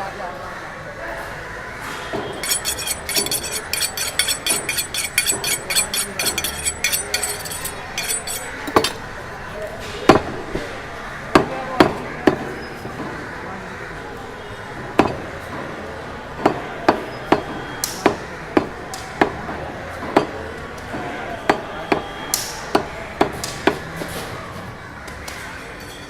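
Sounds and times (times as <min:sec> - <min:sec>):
crowd chatter: 0:00.0 - 0:26.0
rapid metallic clinking: 0:02.4 - 0:09.0
loud sharp knocks: 0:09.8 - 0:13.2, 0:14.8 - 0:15.7.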